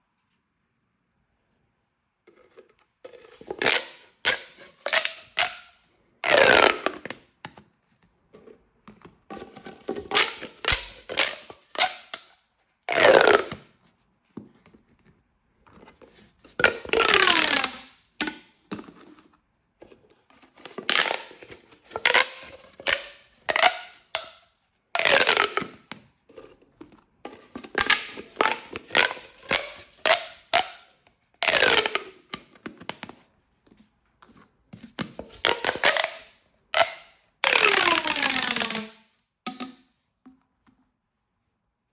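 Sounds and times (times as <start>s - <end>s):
plastic pop tubes popping: 3.1s - 7.3s, 9.3s - 13.7s, 16.6s - 18.9s, 20.6s - 24.4s, 25.0s - 26.1s, 27.2s - 33.2s, 34.8s - 40.4s.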